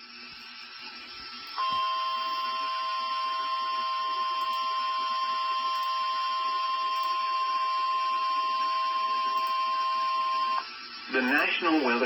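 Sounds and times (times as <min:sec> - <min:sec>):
steady warning alarm tone: 0:01.6 - 0:12.0
radio hiss: 0:10.6 - 0:12.0.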